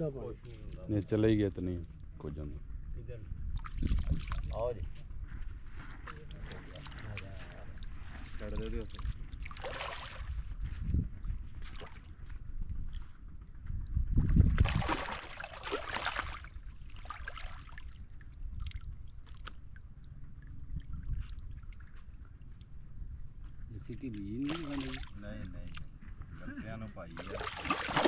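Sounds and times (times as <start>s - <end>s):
river water splashing: 3.6s - 4.6s, 6.1s - 10.6s, 14.6s - 22.4s, 24.4s - 25.9s, 27.2s - 28.0s.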